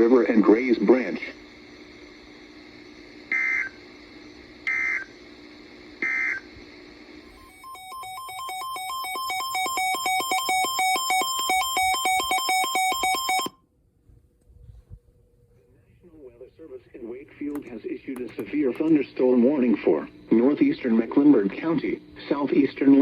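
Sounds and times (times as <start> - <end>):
receiver hum and hiss: 0.0 - 23.0
digital data tones: 7.3 - 13.5
fast electronic alert beeping: 7.4 - 13.5.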